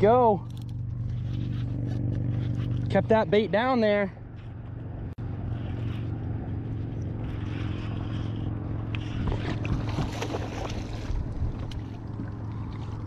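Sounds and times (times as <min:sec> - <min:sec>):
boat motor humming: 0:00.0 - 0:13.0
water splashing and lapping: 0:04.3 - 0:13.0.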